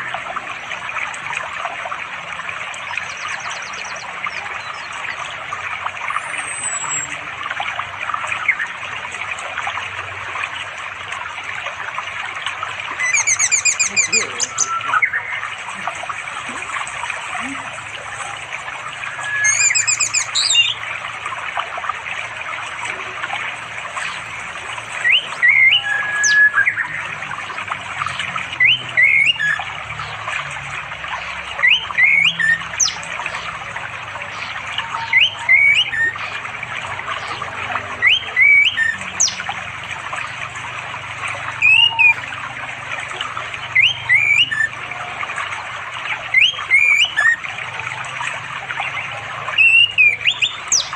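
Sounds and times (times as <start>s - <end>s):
stream water flowing: 0.0s - 50.9s
thrush calling: 12.5s - 30.3s, 31.1s - 50.9s
harsh bird call: 13.0s - 15.7s, 19.1s - 20.8s.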